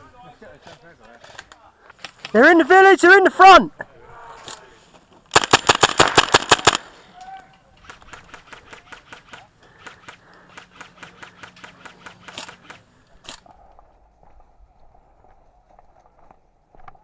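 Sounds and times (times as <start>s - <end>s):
distant airsoft gunfire clicking: 5.3s - 6.9s, 7.8s - 12.8s
airsoft gun firing close: 5.3s - 7.0s.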